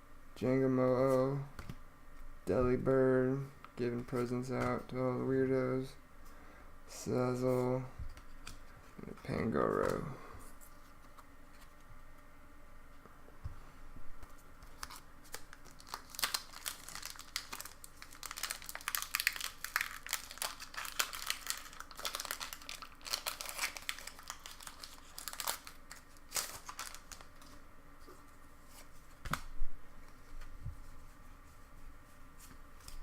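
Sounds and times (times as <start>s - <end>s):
foil wrapper crinkling and tearing: 14.6s - 27.6s.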